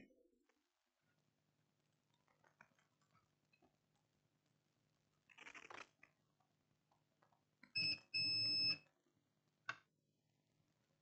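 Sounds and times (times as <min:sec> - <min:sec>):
multimeter continuity beeps: 0:07.8 - 0:08.8.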